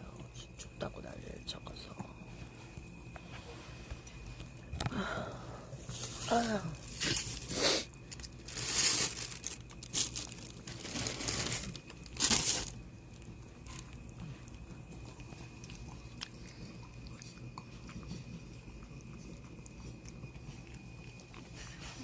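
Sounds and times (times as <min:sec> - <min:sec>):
rustling and crinkling: 0:05.8 - 0:15.6.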